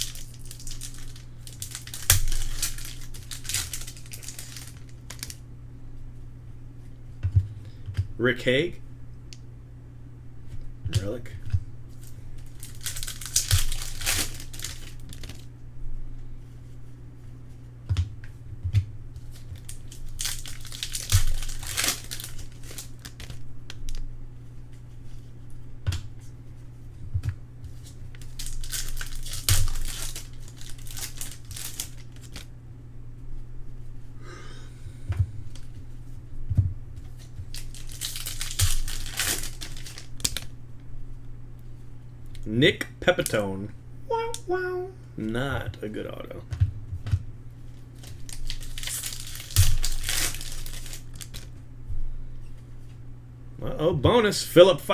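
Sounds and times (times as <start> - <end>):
handling of cards: 0.0 - 5.4, 10.9 - 15.5, 19.1 - 32.5, 37.0 - 40.6, 47.0 - 51.6
wrappers crinkling and tearing: 0.0 - 5.4, 11.9 - 15.5, 19.2 - 24.0, 27.7 - 32.5, 37.1 - 40.5, 47.7 - 51.6
steady low hum: 0.0 - 54.9.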